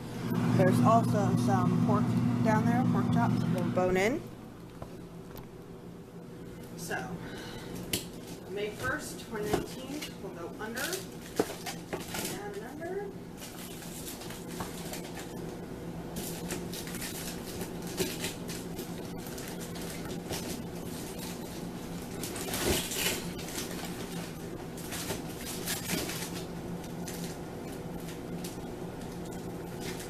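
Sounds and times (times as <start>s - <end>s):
freezer hum: 0.0s - 30.0s
frozen food packages rustling: 7.3s - 15.5s, 16.2s - 30.0s
packages clattering: 7.8s - 12.7s, 16.2s - 30.0s.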